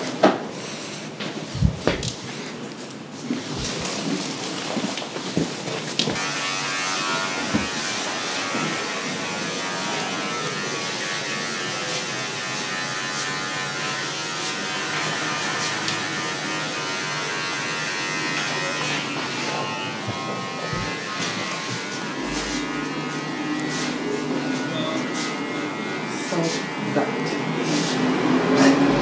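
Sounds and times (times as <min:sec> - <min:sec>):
electric hair clipper buzzing: 0:01.5 - 0:02.2, 0:03.6 - 0:04.1, 0:06.0 - 0:26.3.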